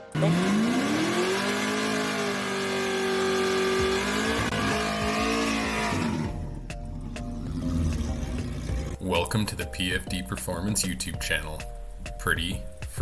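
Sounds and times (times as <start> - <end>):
car engine revving: 0.0 - 9.0.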